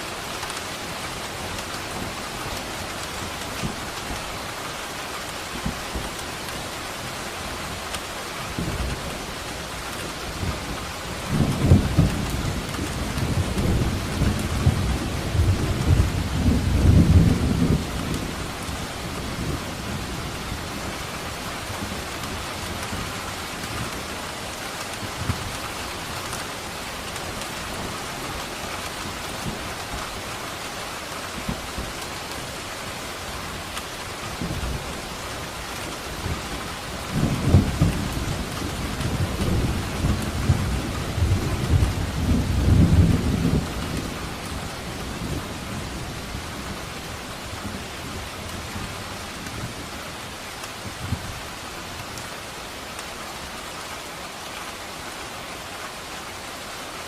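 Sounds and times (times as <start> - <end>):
steady rain: 0.0 - 57.0
thunder rumbling: 35.8 - 48.9.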